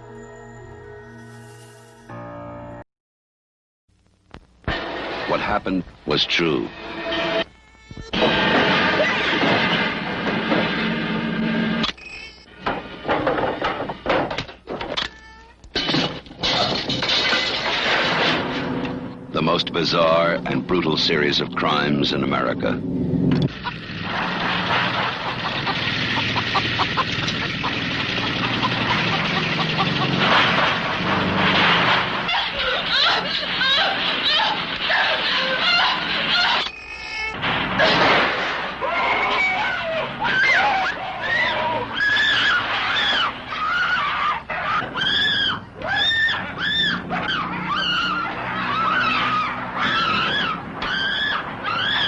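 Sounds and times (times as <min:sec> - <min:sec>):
low motor-like drone: 0:18.6 - 0:31.3
high-pitched shrieks: 0:32.3 - 0:37.4, 0:38.8 - 0:52.0.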